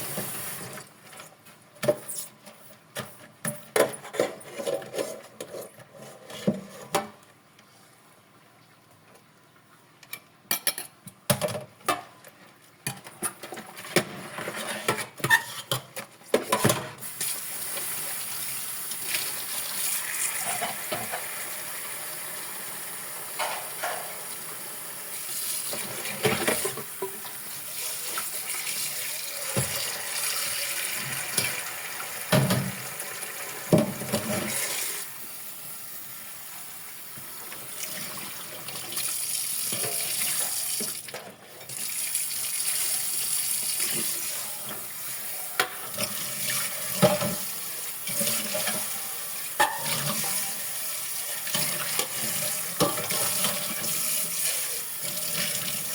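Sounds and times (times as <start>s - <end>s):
dishes clinking and clattering: 20.4s - 21.3s, 23.4s - 24.3s, 49.6s - 50.6s
tap water running into sink: 25.4s - 35.0s.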